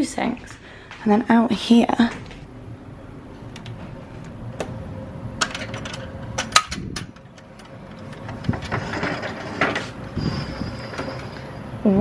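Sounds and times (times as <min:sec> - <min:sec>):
rough scraping rush: 0:08.5 - 0:11.6.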